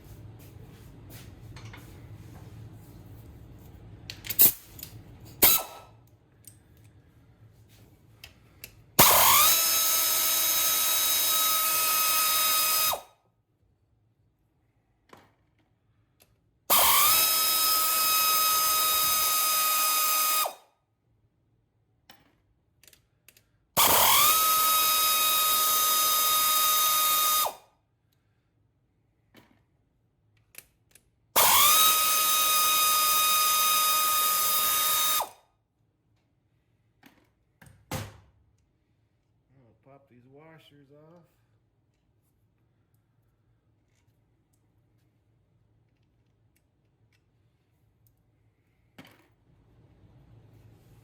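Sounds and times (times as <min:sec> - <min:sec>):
power driver whine: 0:09.0 - 0:13.0, 0:16.7 - 0:20.5, 0:23.8 - 0:27.6, 0:31.4 - 0:35.3.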